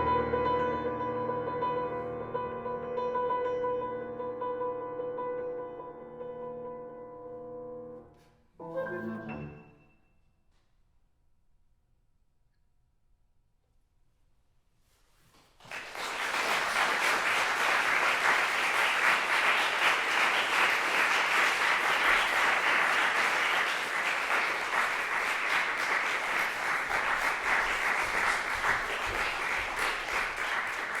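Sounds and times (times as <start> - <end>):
audience applauding: 15.6 - 31.0.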